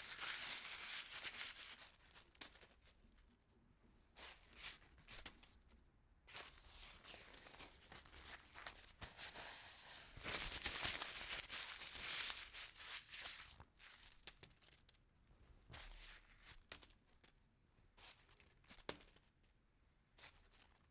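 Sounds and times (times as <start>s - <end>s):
paper crumpling: 0.0s - 1.9s, 7.0s - 13.6s.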